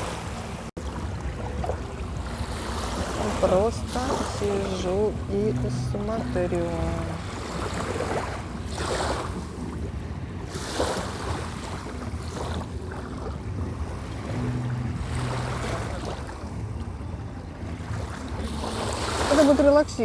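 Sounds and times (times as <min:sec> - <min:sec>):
waves washing onto shore: 0:00.0 - 0:20.0
wind rumble on microphone: 0:00.0 - 0:20.0.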